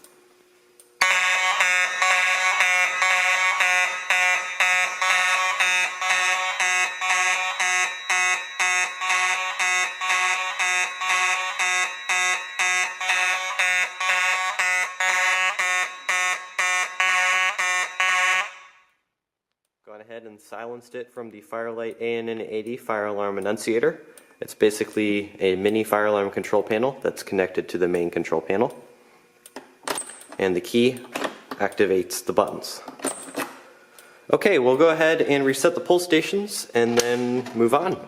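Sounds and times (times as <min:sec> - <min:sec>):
buzzy pulsing fire alarm: 0:01.0 - 0:19.0.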